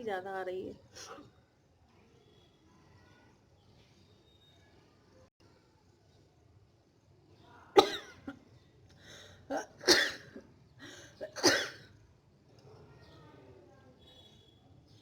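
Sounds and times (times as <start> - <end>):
woman coughing and sneezing: 7.8 - 8.4, 9.5 - 10.4, 11.2 - 11.9.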